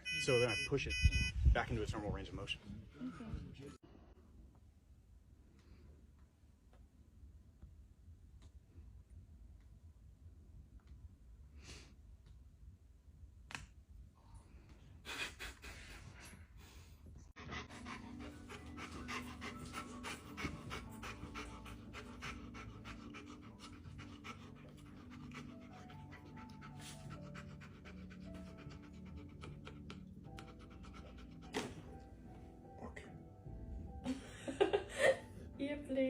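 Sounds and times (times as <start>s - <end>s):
dog panting fast: 17.4s - 31.9s.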